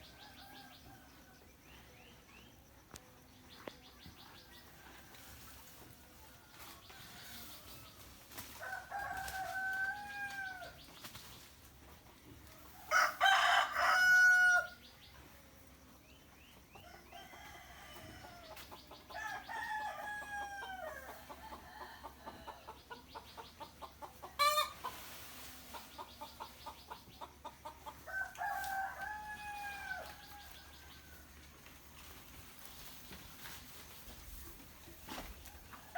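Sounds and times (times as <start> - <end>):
roosters crowing: 6.4 - 10.8, 12.6 - 14.8, 16.8 - 22.8, 24.2 - 25.0, 27.6 - 31.5
chickens clucking: 20.3 - 28.8.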